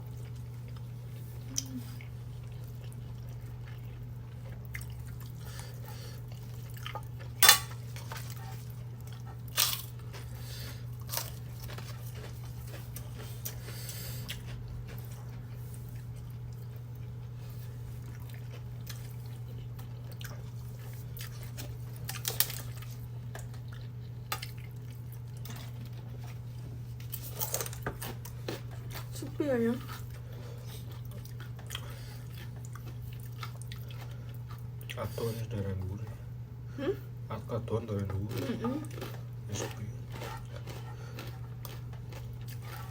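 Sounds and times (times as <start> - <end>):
steady low hum: 0.0 - 42.9
utensils and dishes clinking: 7.4 - 7.8.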